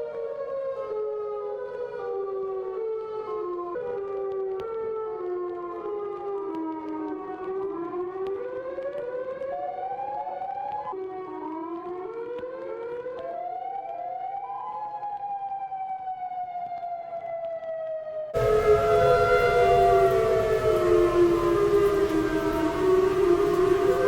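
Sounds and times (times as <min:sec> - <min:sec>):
tornado warning sirens: 0:00.0 - 0:24.0.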